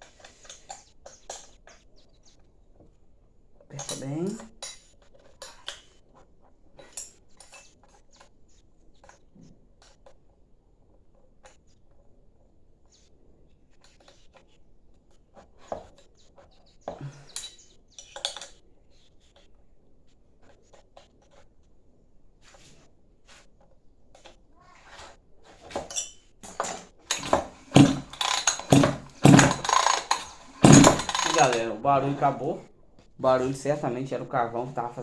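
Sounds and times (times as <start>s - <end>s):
wrench clicking on bolts: 26.5s - 31.7s.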